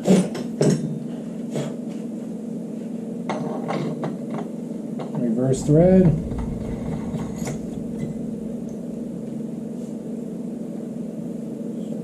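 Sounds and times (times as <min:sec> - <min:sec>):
steady low hum: 0:05.4 - 0:11.9.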